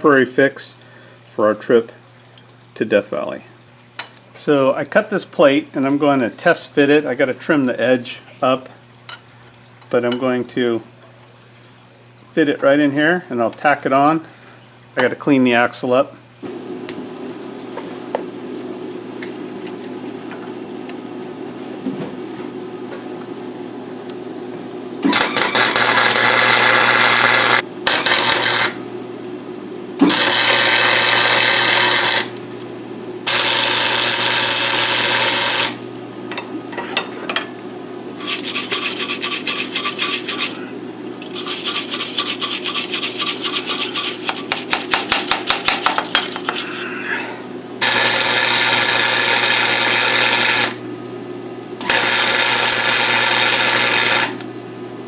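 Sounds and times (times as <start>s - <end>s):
grinder on steel: 25.1s - 28.8s, 30.0s - 32.3s, 33.3s - 35.8s, 38.2s - 46.9s, 47.8s - 50.8s
steady low hum: 32.1s - 47.8s.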